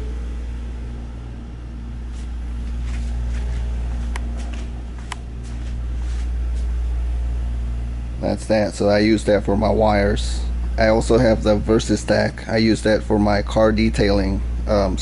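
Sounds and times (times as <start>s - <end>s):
low hum and rumble: 0.0s - 15.0s.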